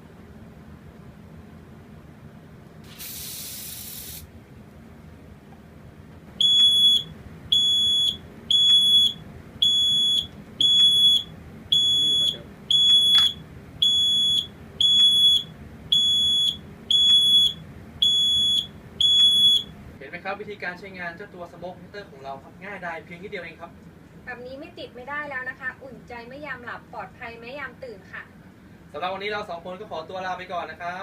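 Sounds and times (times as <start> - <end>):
short hiss: 2.8 - 4.3
smoke detector alarm beeping: 6.4 - 19.8.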